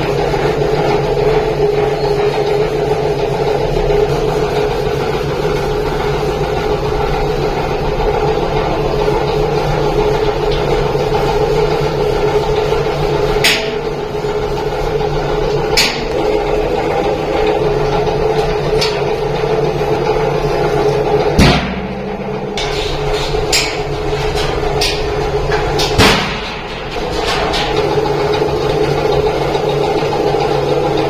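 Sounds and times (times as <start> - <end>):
machine humming: 0.0 - 31.0
sharp knocks: 21.4 - 27.8.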